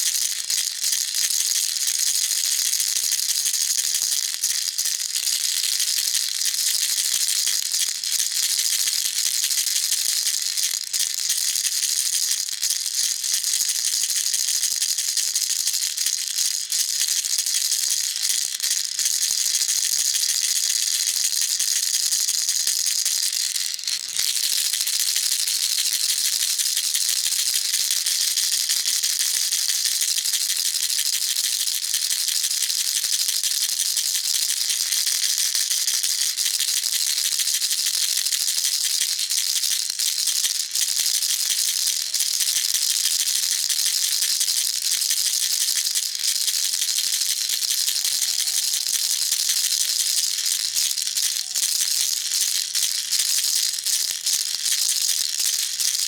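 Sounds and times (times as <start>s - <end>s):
baby rattle shaken: 0.0s - 56.0s.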